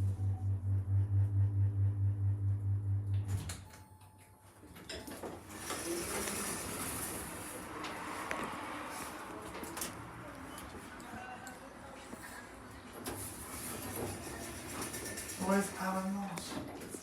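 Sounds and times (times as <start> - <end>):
lift doors sliding open: 5.2 - 8.2, 13.0 - 15.7.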